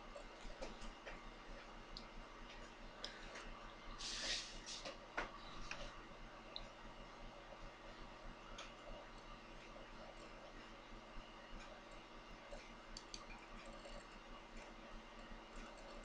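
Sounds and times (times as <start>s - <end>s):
short hiss: 4.0s - 4.9s
faint clicks: 11.6s - 16.0s.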